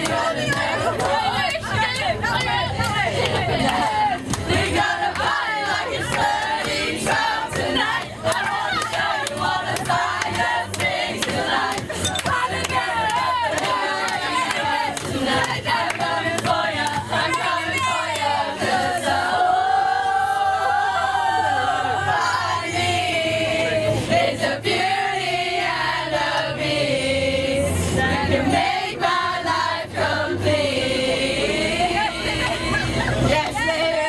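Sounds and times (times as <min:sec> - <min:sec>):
group of voices singing: 0:00.0 - 0:34.0.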